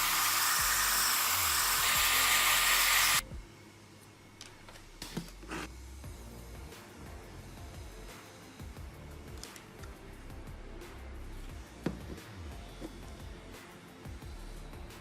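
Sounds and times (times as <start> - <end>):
loud hiss from tool: 0.0 - 3.2
background music: 0.0 - 15.0.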